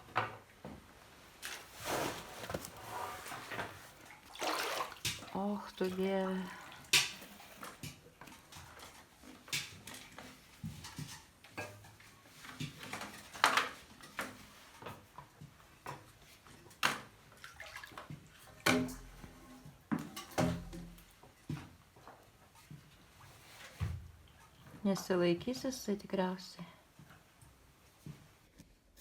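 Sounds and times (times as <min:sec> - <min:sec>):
floodwater splashing and sloshing: 0:01.3 - 0:10.6, 0:16.4 - 0:19.2.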